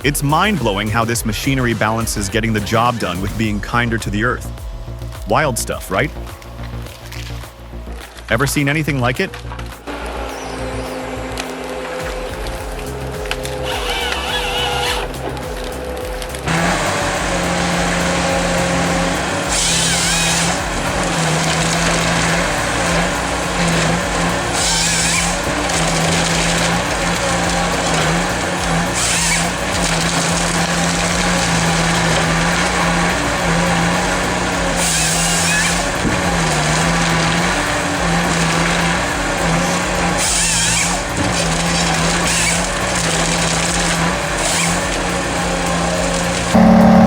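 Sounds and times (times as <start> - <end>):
wood chipper engine drone: 0.0 - 47.0
short hissing bursts: 10.2 - 46.6.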